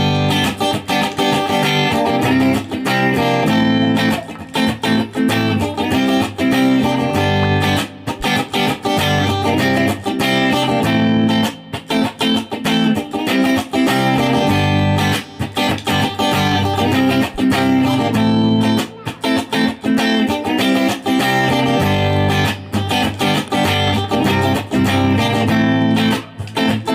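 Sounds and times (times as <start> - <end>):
guitar background music: 0.0 - 26.9.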